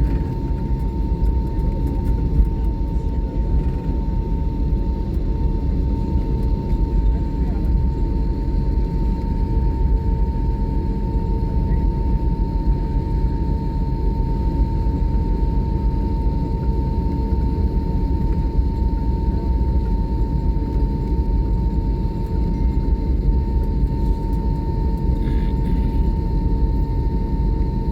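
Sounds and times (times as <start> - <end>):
jet engines idling: 19.3 - 27.1.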